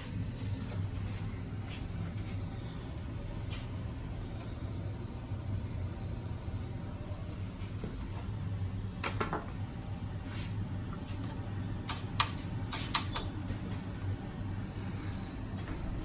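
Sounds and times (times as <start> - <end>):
steady low hum: 0.0 - 16.0
sharp clicks and knocks: 11.8 - 13.4.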